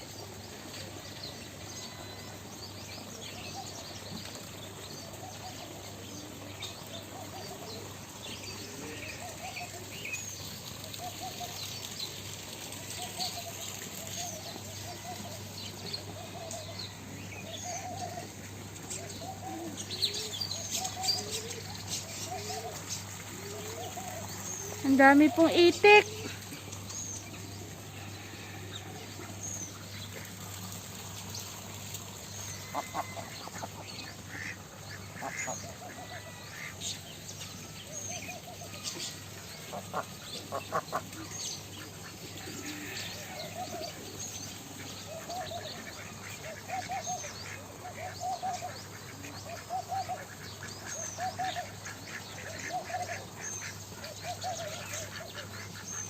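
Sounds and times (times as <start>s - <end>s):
ducks quacking: 32.6s - 36.7s, 39.6s - 43.3s.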